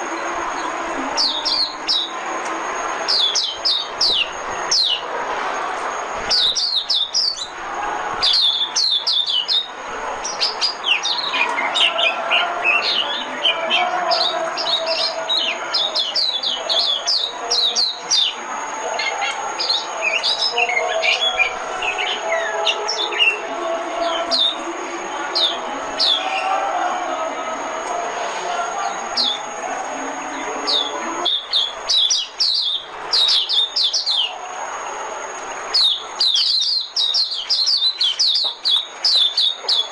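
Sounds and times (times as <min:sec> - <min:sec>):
bird twittering song: 0:03.1 - 0:05.0, 0:06.3 - 0:07.6, 0:08.2 - 0:23.4, 0:30.4 - 0:34.3, 0:35.7 - 0:39.9.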